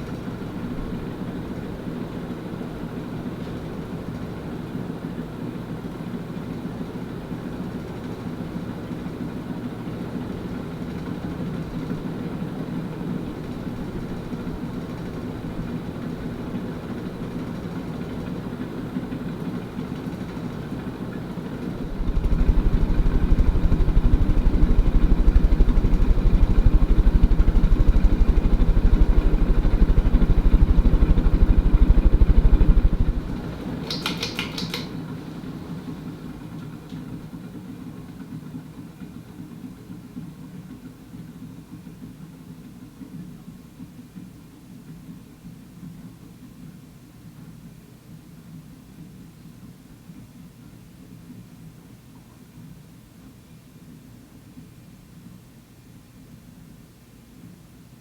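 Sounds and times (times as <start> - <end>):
ceiling fan motor hum: 0.0 - 50.0
loud low rumble: 21.8 - 33.5.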